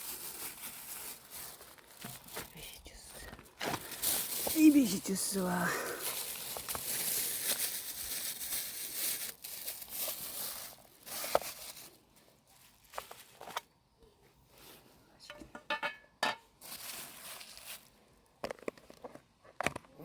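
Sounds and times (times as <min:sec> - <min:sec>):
plastic wrapping crinkling: 0:00.0 - 0:13.7, 0:16.6 - 0:18.6.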